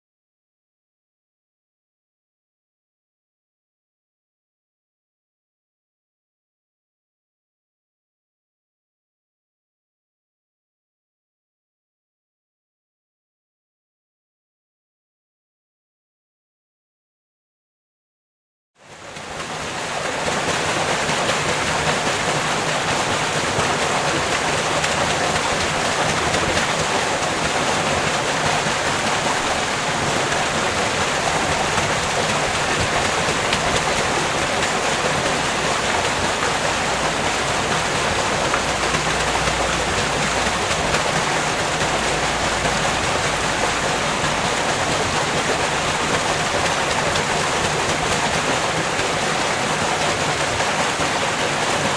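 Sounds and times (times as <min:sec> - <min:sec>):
water rushing and splashing: 0:18.8 - 0:51.9
water wheel turning: 0:18.9 - 0:51.9.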